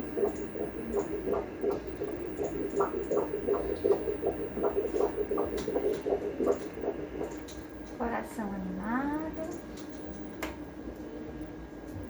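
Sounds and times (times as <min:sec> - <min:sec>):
fetal heartbeat on doppler speaker: 0:00.0 - 0:07.4.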